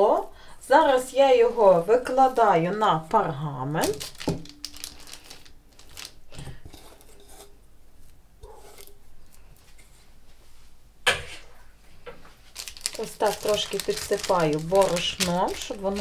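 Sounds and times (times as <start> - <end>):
parchment paper rustling: 3.8 - 7.0, 12.3 - 16.0.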